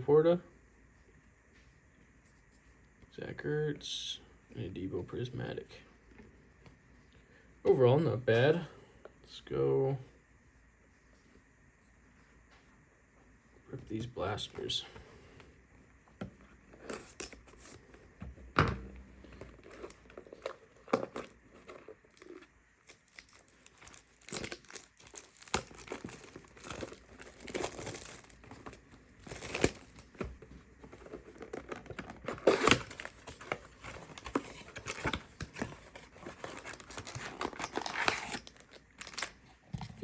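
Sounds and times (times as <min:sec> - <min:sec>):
plastic wrapping crinkling: 0:19.3 - 0:40.0
plastic wrapping tearing: 0:19.6 - 0:30.0, 0:31.3 - 0:39.4.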